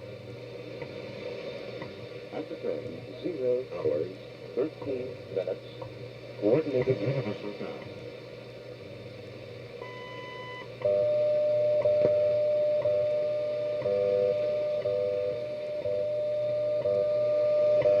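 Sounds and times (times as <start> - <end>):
steady audio tone: 0.0 - 18.0
long time signal beep: 9.8 - 18.0.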